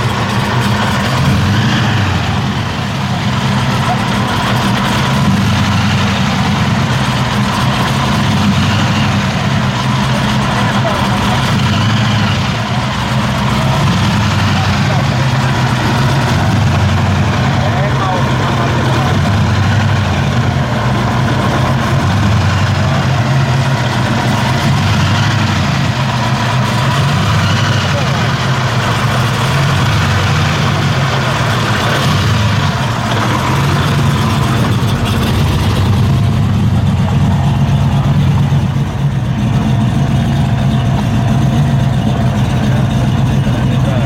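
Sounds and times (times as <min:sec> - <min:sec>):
car engine idling: 0:00.0 - 0:44.0.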